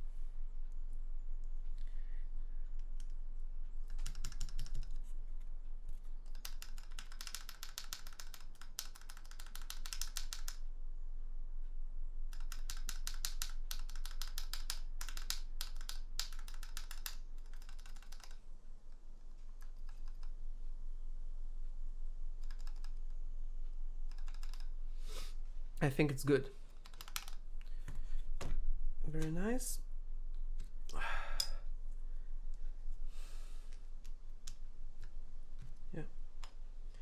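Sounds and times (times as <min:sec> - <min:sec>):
mechanical keyboard switches clacking: 0:06.2 - 0:10.6, 0:12.3 - 0:18.4, 0:26.8 - 0:27.4.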